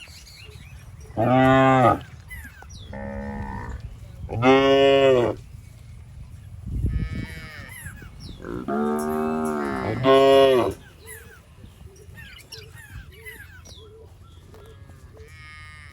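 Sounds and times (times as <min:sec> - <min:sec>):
cattle mooing: 0:01.2 - 0:02.0, 0:02.9 - 0:05.4, 0:08.4 - 0:10.8.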